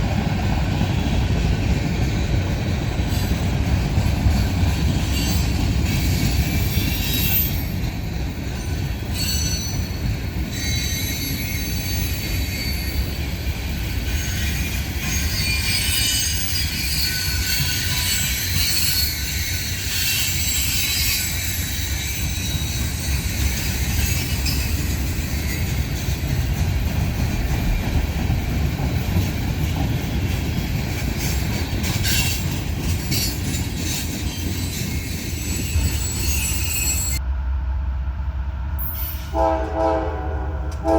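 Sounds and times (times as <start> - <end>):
train wheels rumbling on rail: 0.0 - 40.9
high-pitched wheel squeal: 5.1 - 7.7, 8.6 - 13.2, 34.3 - 37.2.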